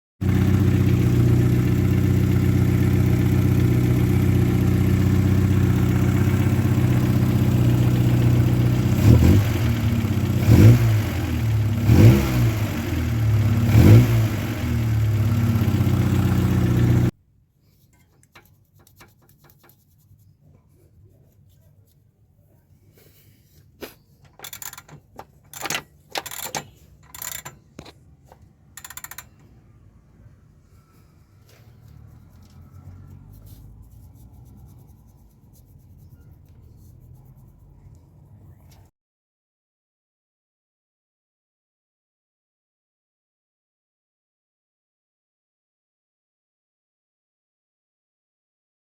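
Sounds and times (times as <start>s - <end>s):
car engine running: 0.2s - 17.1s
engine knocking: 0.2s - 17.1s
faint clicks and knocks: 17.8s - 19.9s, 23.8s - 29.6s.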